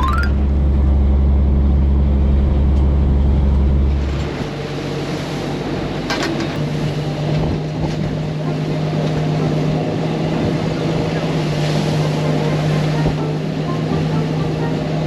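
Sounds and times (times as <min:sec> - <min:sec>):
boat engine droning: 0:08.1 - 0:15.0.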